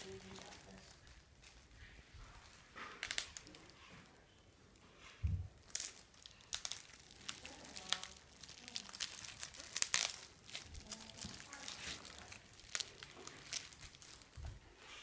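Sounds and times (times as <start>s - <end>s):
plastic packaging crinkling: 0.0s - 15.0s
soft low thump: 5.2s - 5.5s.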